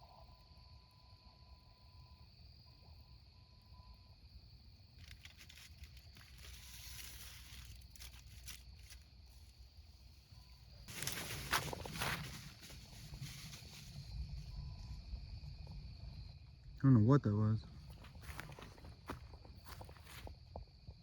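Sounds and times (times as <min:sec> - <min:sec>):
rustling crackling noise: 0:05.0 - 0:09.7, 0:10.8 - 0:14.5.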